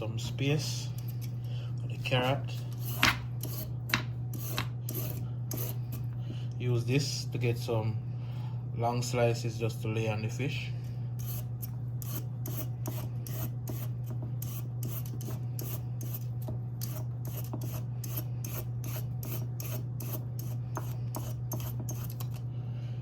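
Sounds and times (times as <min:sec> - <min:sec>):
steady low hum: 0:00.0 - 0:23.0
peeler rasping on carrot: 0:02.5 - 0:06.2, 0:11.2 - 0:22.4.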